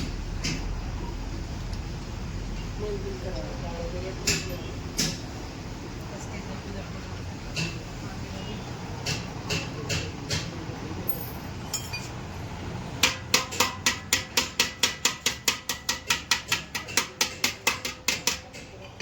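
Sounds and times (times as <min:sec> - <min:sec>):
hammer striking metal: 0:13.0 - 0:18.7.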